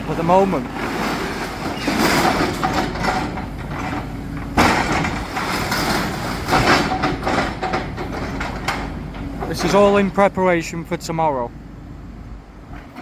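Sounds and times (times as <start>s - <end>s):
diesel engine running: 0.0s - 13.0s
rubble crashing and clattering: 0.1s - 9.8s.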